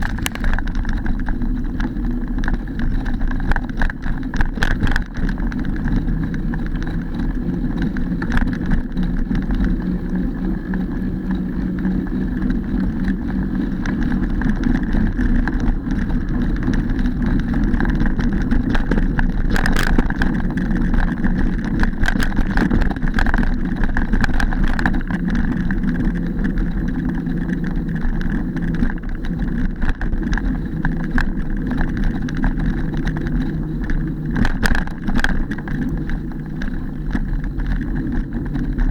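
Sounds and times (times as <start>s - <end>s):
bike rattles and knocks: 0.0s - 38.9s
bike tyre rumble on dirt: 0.0s - 38.9s
wind on microphone: 0.0s - 38.9s.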